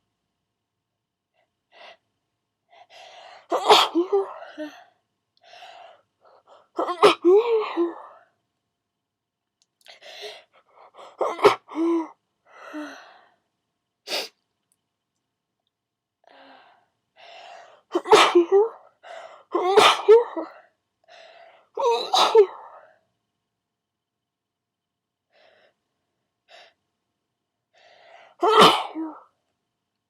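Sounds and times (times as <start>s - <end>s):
person sneezing: 17.9s - 18.6s, 19.6s - 20.3s, 28.4s - 29.2s.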